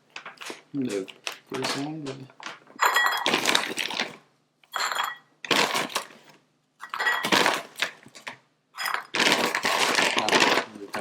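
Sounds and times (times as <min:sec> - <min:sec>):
kitchen rustling and clinking: 0:00.1 - 0:11.0.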